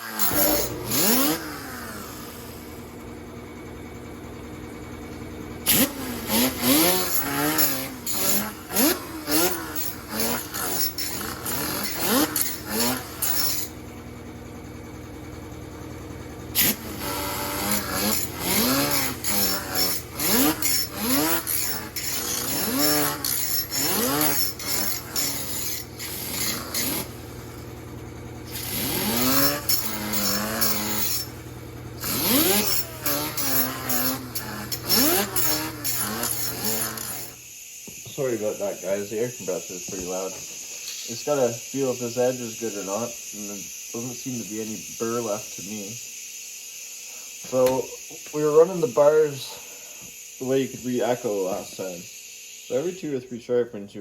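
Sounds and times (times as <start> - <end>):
metal-on-metal scraping strokes: 0.0 - 1.4, 5.7 - 13.8, 16.6 - 27.2, 28.5 - 31.4, 32.0 - 37.4
air compressor running: 0.0 - 53.2.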